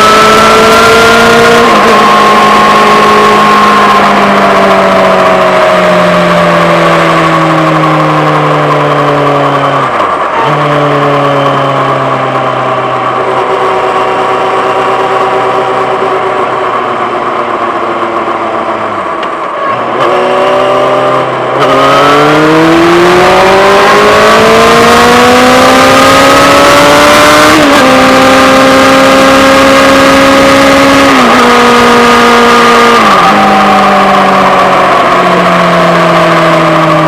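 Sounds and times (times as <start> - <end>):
motorcycle engine revving: 0.0 - 37.0.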